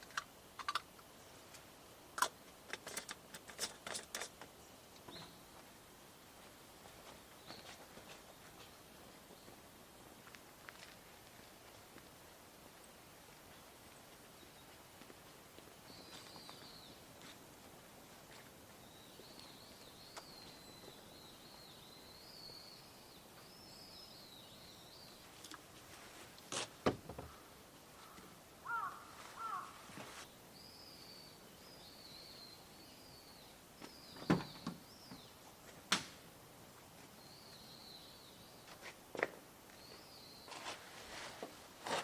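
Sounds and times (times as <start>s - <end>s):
small bird warbling: 28.0s - 29.8s.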